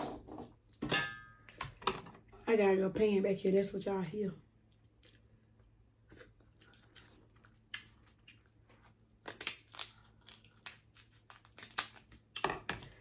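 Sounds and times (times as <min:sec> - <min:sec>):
crab shells cracking: 0:09.2 - 0:13.0.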